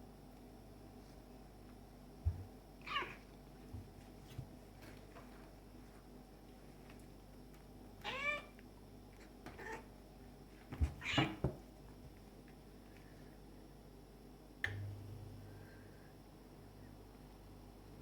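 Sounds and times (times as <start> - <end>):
cat meowing: 8.0 - 8.5.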